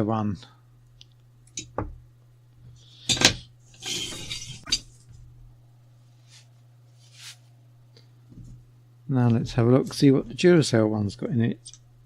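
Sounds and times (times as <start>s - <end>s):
objects clinking and clattering: 3.1s - 4.9s.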